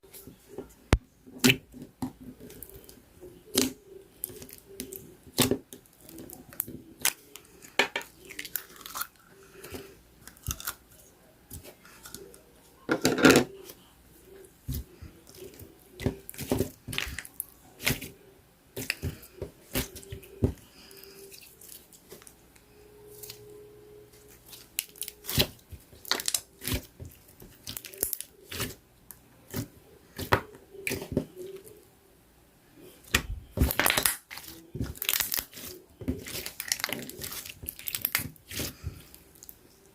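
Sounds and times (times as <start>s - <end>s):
slime clicking and popping: 33.1s - 38.7s.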